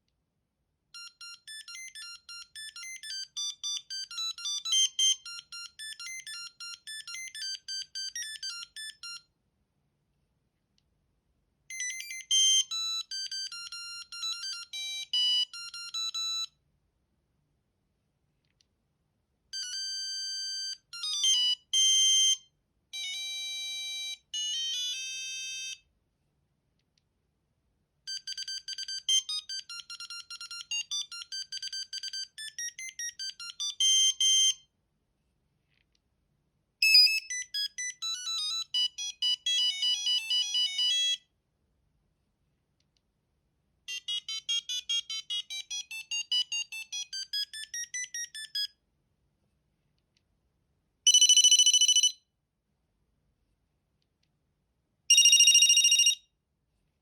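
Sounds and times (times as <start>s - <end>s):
phone ringtone beeping melodies: 1.0s - 9.2s, 11.7s - 16.5s, 19.6s - 22.4s, 23.0s - 25.8s, 28.1s - 34.6s, 36.8s - 41.2s, 43.9s - 48.7s, 51.1s - 52.2s, 55.1s - 56.2s.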